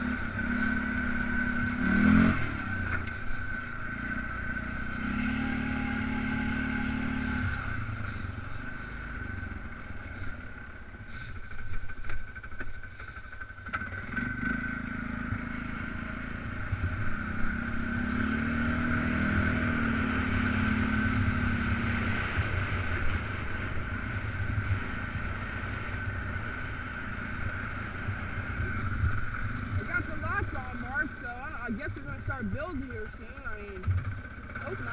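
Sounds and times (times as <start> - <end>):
atv engine running: 0.0 - 34.9.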